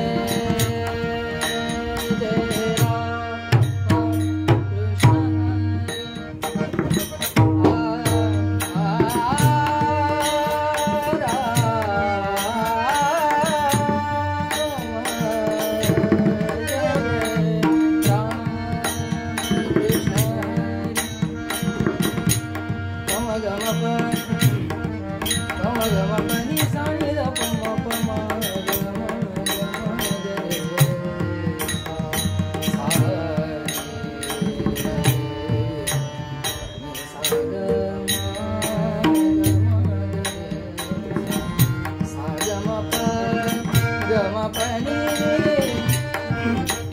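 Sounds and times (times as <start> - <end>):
hand drum rhythmic drumming: 0.0 - 46.9
person singing gliding melody: 0.0 - 46.9.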